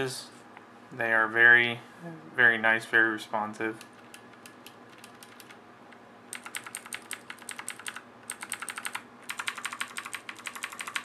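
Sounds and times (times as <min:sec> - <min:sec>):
mechanical keyboard clicks: 0:03.9 - 0:05.6, 0:06.3 - 0:11.0.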